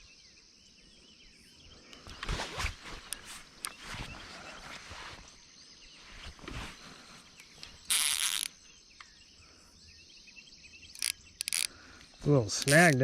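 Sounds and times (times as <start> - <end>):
birds chirping: 0.0 - 13.0
faint insects chirping: 0.0 - 13.0
fishing reel ratchet buzzing: 7.9 - 8.5, 10.9 - 11.7, 12.5 - 13.0.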